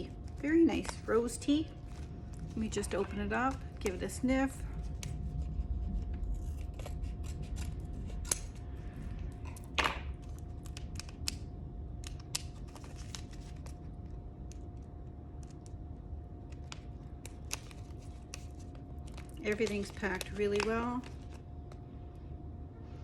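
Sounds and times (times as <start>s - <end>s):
packaging snaps: 9.4s - 15.8s, 16.4s - 21.8s
tea packaging crinkling: 12.0s - 15.8s, 16.4s - 21.8s.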